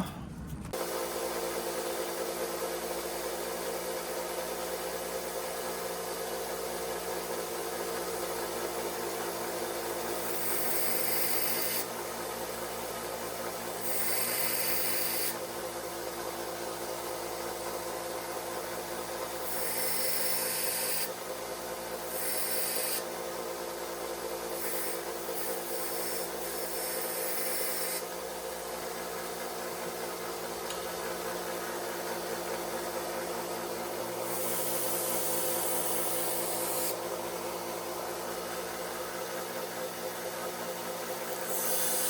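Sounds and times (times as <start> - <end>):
steady hum: 0.0 - 4.1.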